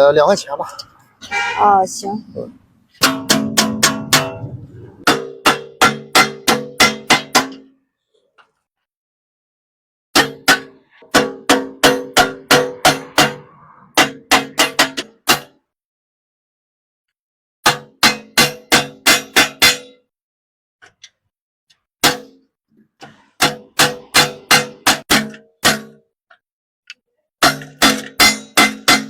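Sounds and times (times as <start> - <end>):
hammer striking metal pot: 3.0 - 4.4, 5.0 - 7.6, 10.2 - 15.5, 27.4 - 29.0.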